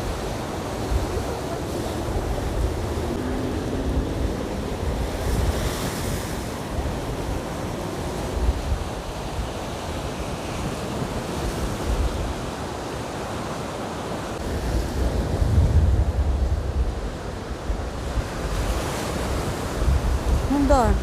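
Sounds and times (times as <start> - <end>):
surf breaking on shore: 0.0 - 21.0
wind buffeting microphone: 14.3 - 21.0.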